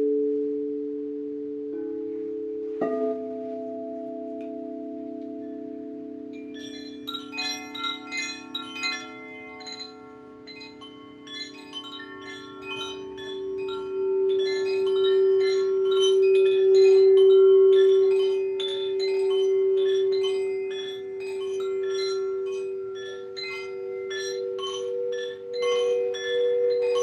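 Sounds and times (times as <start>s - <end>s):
singing bowl hum: 0.0s - 27.0s
chimes tinkling: 4.4s - 27.0s.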